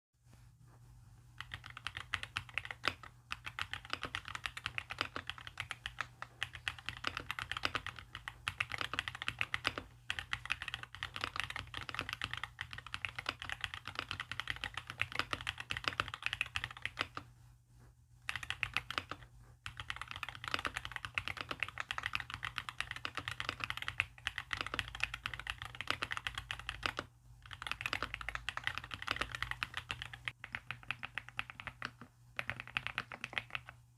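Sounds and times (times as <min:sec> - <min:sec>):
fast typing on mechanical keyboard: 0:01.4 - 0:17.2, 0:18.3 - 0:33.8.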